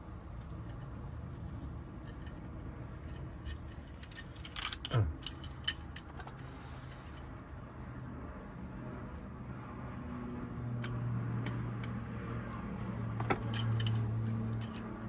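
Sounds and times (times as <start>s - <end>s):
small metal clicks and rattles: 2.0s - 6.4s, 10.8s - 15.0s.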